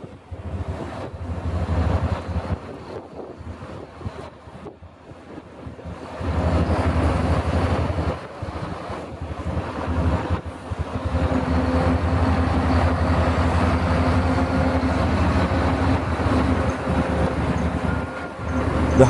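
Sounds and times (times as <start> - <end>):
diesel engine running: 6.4 - 19.0.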